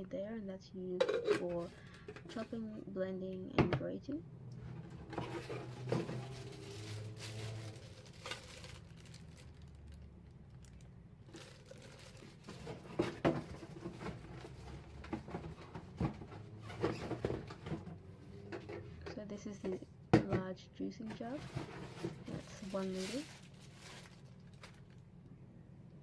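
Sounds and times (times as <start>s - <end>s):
plastic packaging crinkling: 5.1s - 15.0s, 21.3s - 25.1s.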